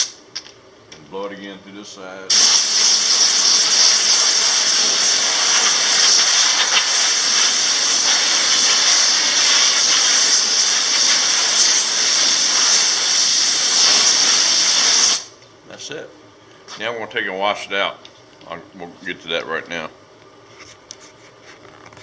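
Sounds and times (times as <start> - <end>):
compressed air hissing: 0.0 - 0.2, 2.3 - 15.4.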